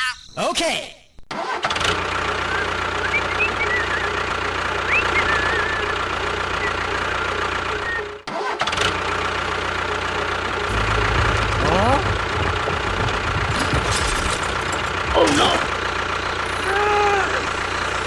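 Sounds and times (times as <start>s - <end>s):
engine-like running sound: 9.3s - 18.0s.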